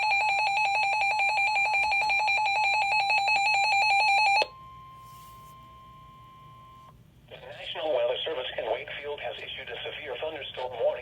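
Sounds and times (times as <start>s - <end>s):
faint steady tone: 0.6s - 7.4s.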